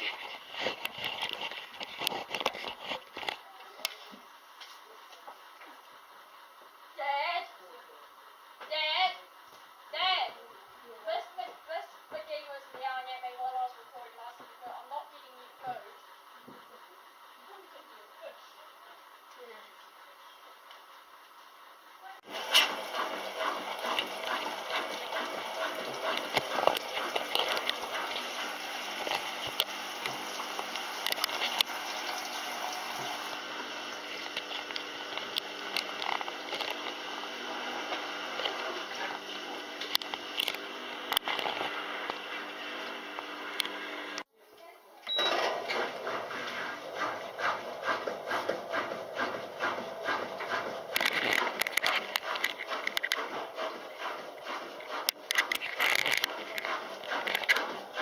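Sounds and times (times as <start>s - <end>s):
washing machine running: 9.9s - 44.3s, 45.1s - 58.0s
water gushing and splashing: 22.3s - 35.7s
dog panting: 22.5s - 28.6s, 45.6s - 58.0s.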